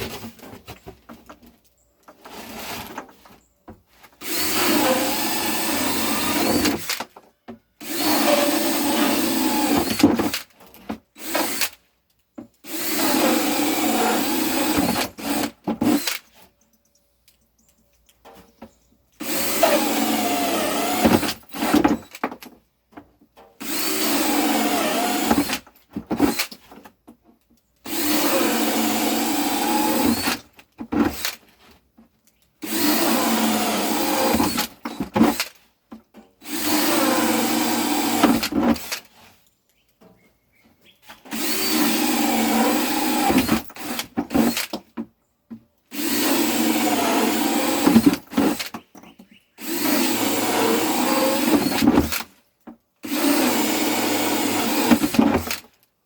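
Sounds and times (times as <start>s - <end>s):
power drill boring holes: 4.2s - 7.1s, 7.8s - 10.5s, 11.2s - 11.8s, 12.6s - 16.2s, 19.2s - 22.2s, 23.6s - 26.6s, 27.8s - 31.4s, 32.6s - 35.6s, 36.4s - 39.1s, 41.2s - 44.8s, 45.9s - 48.8s, 49.6s - 52.3s, 53.0s - 55.7s.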